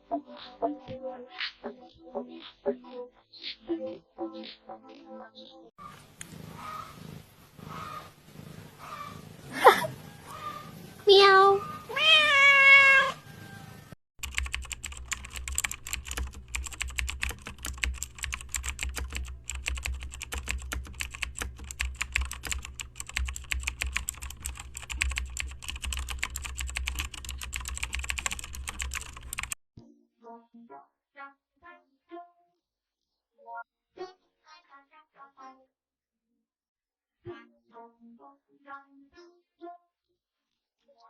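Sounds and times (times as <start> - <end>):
computer keyboard clicking: 14.2 - 29.6.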